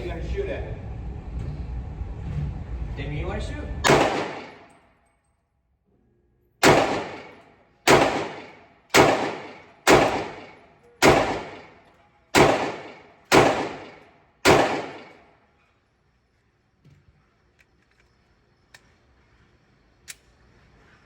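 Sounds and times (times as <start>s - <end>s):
pistol shots echoing: 3.8s - 4.7s, 6.6s - 15.3s.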